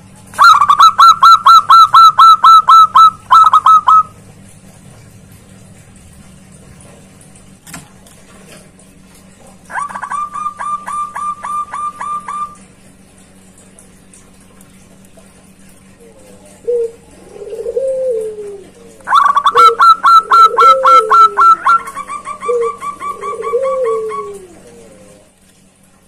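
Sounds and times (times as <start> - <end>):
dove low coos: 0.4 - 4.2, 9.6 - 12.6, 15.9 - 25.4.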